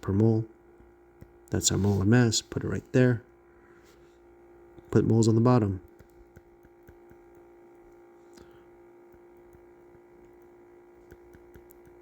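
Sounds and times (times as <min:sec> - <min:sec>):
faint electrical hum: 0:00.0 - 0:12.0
soft ticks: 0:11.1 - 0:12.0.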